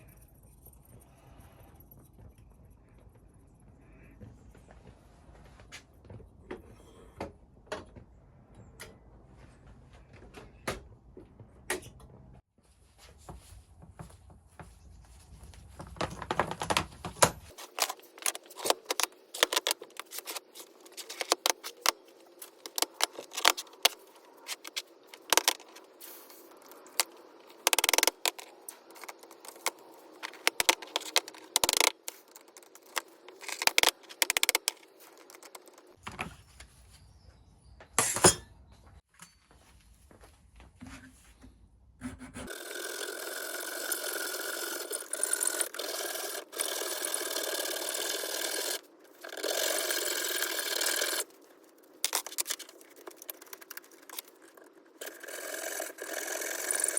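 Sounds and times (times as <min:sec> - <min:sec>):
metal objects clinking: 0:38.0 - 0:38.5.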